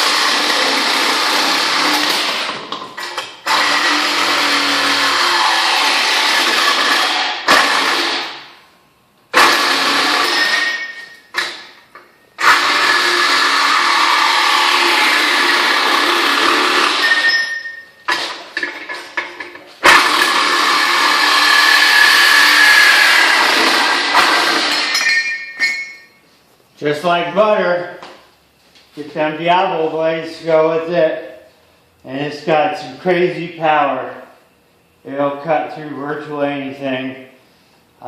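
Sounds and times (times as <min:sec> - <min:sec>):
reciprocating saw cutting metal: 0:03.5 - 0:08.4, 0:12.4 - 0:17.4.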